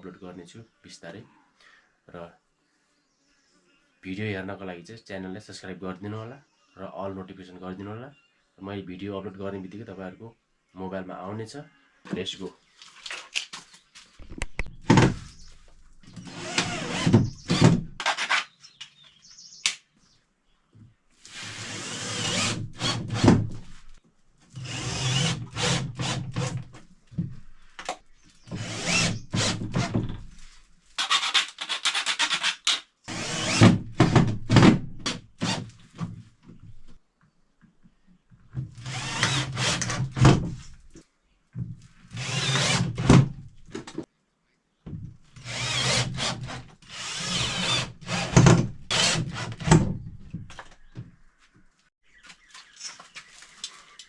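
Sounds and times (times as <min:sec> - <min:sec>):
knocks and scraping: 0:13.0 - 0:18.4, 0:44.9 - 0:54.0
electric drill running: 0:16.2 - 0:17.6, 0:24.6 - 0:26.2, 0:45.5 - 0:48.3.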